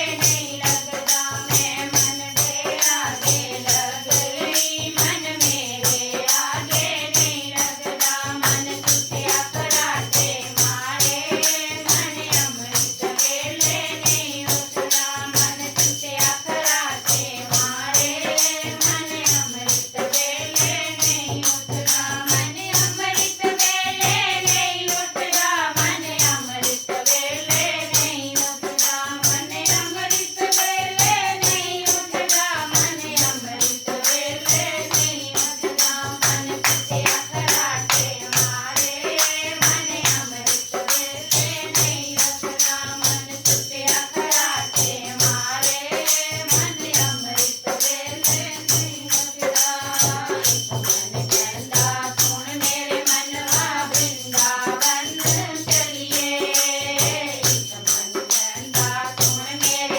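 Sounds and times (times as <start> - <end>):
jingling percussion: 0.0 - 59.9
drum beat: 20.6 - 45.6.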